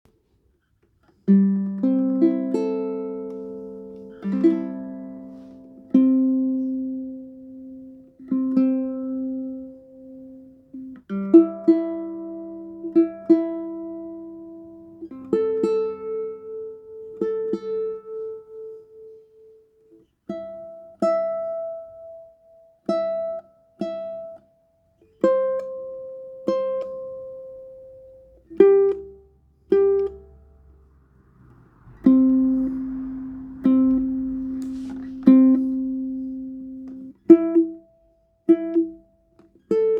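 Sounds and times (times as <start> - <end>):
ukulele plucked notes and chords: 1.1 - 39.9.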